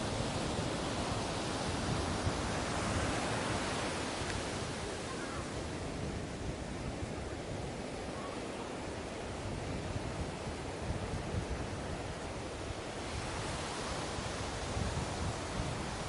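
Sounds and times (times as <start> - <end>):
sea waves washing onto beach: 0.0 - 16.0.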